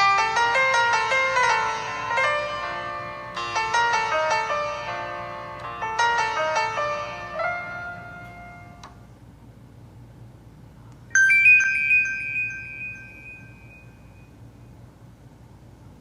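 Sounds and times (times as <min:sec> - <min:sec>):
melodic electronic ringtone: 0:11.1 - 0:14.3
bright chime: 0:11.1 - 0:14.4.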